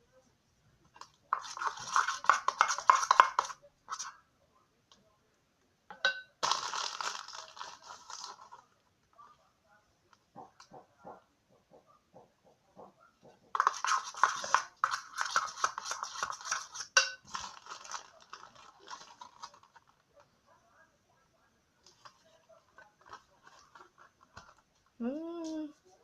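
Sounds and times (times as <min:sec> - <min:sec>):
spoon scraping a bowl: 0:01.3 - 0:04.2, 0:13.6 - 0:18.0.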